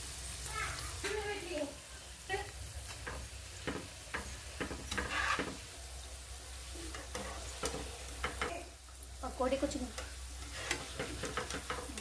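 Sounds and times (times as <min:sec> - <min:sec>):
fritters sizzling in hot oil: 0:00.0 - 0:12.0
spoon clicking and scraping pan: 0:03.0 - 0:05.6, 0:06.9 - 0:08.5, 0:09.9 - 0:12.0.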